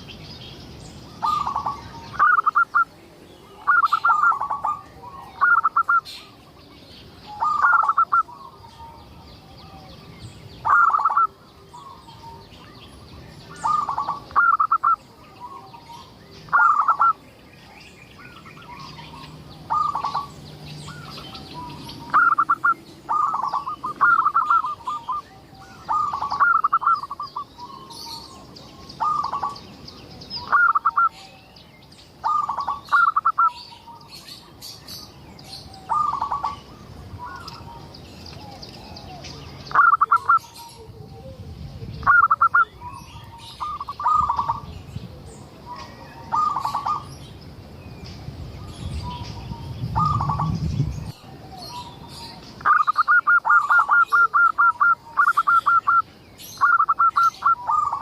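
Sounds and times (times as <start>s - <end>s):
small birds chirping: 0.0s - 58.0s
dove cooing: 1.2s - 2.9s, 3.5s - 6.4s, 7.3s - 9.8s, 10.6s - 12.4s, 13.5s - 15.8s, 16.5s - 17.2s, 18.6s - 29.6s, 30.4s - 31.4s, 32.2s - 34.0s, 35.6s - 44.7s, 45.6s - 47.1s, 50.0s - 50.6s, 51.2s - 56.0s, 56.6s - 58.0s.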